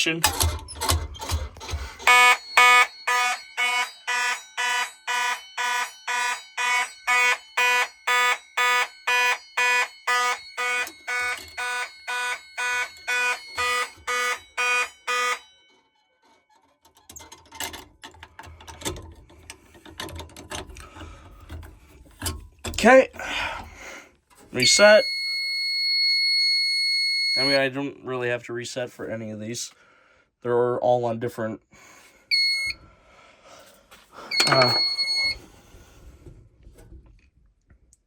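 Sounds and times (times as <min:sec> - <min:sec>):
fire alarm horn blasts: 0:01.6 - 0:16.1, 0:24.6 - 0:27.7, 0:32.3 - 0:32.8, 0:34.3 - 0:35.4
faint clicks and handling noise: 0:16.2 - 0:22.8.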